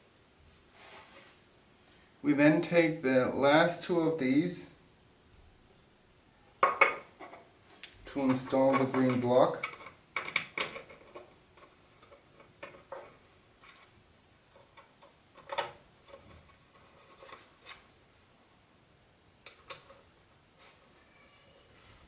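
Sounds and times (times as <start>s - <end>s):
wooden parts clicking and knocking: 8.2s - 13.8s, 14.5s - 17.8s.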